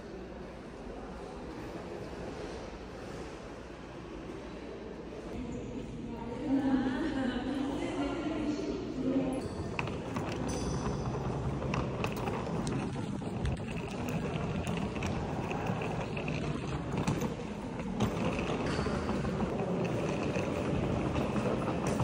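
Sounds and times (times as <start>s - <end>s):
faint clicks and rattles: 9.7s - 22.0s.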